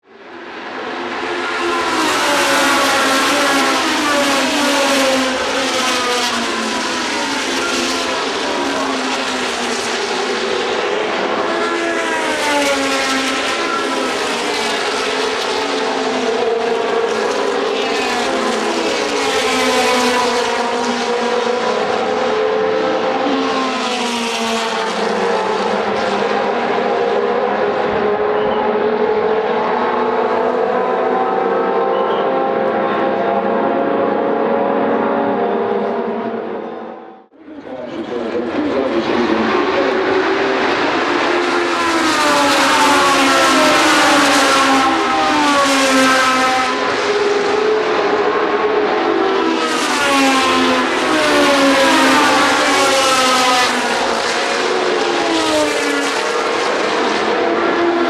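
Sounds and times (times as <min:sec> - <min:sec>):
racing cars passing at speed: 0:00.1 - 0:58.0.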